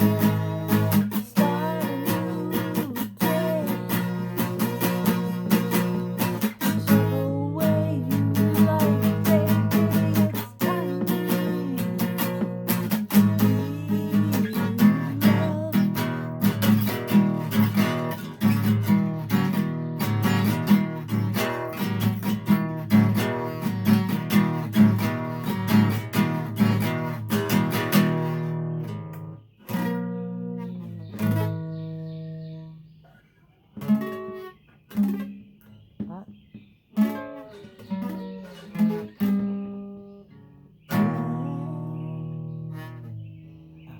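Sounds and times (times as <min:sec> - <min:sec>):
person singing: 0:00.0 - 0:16.4, 0:40.9 - 0:42.6
acoustic guitar strumming: 0:00.0 - 0:43.9.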